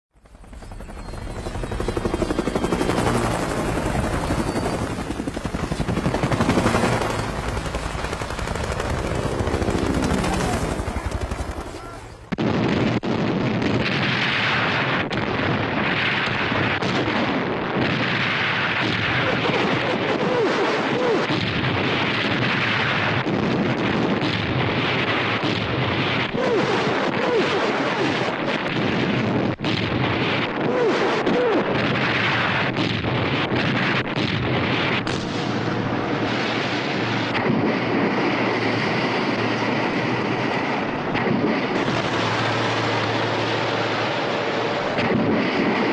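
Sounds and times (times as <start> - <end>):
explosions: 3.3 - 45.9
gunshots: 8.1 - 38.4, 40.8 - 45.9
continuous rumble: 16.4 - 45.9.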